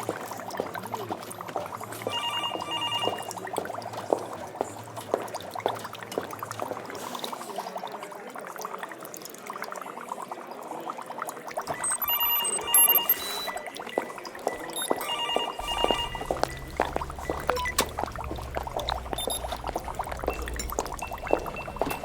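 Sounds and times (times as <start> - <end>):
electronic beeps: 2.1 - 3.4, 11.7 - 22.0
liquid bubbling: 3.2 - 22.0.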